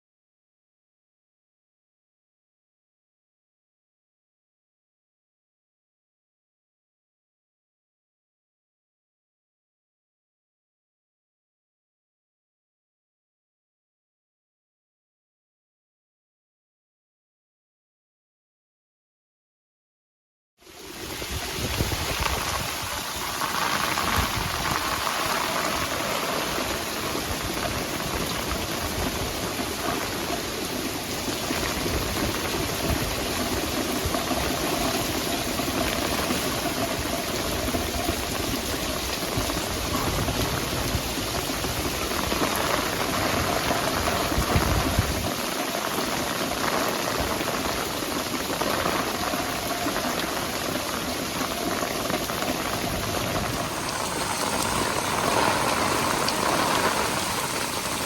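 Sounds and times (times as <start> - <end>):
heavy rain in storm wind: 20.6 - 58.0.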